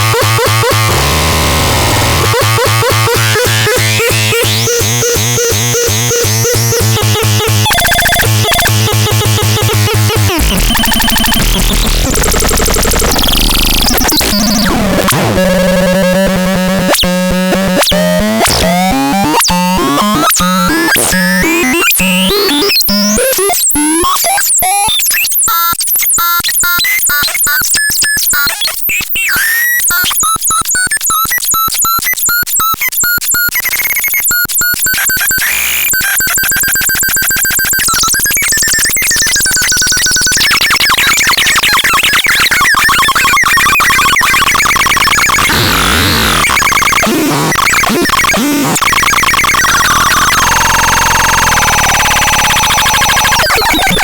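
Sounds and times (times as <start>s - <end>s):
harsh synthesizer noise: 0.0s - 25.0s, 34.9s - 54.0s
high steady synth tone: 43.0s - 54.0s.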